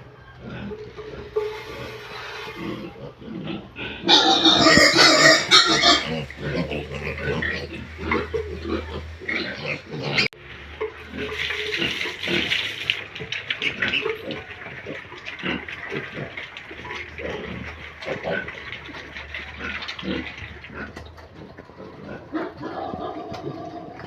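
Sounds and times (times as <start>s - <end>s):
pigs grunting and squealing: 0.0s - 24.0s
pig shrill squeal: 1.4s - 10.3s.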